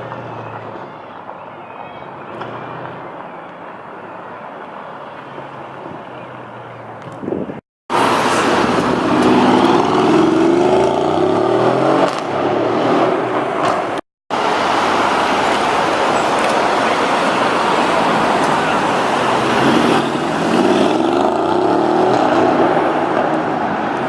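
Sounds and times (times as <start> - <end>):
engine and road noise: 0.0 - 24.0
car engine accelerating hard: 7.9 - 24.0.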